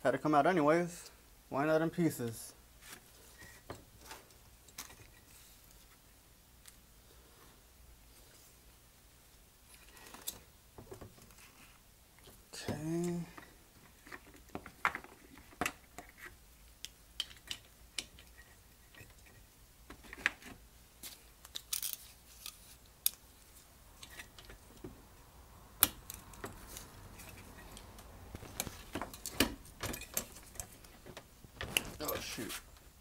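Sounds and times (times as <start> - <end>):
metal parts and tools clinking: 21.5 - 23.2, 26.0 - 31.0.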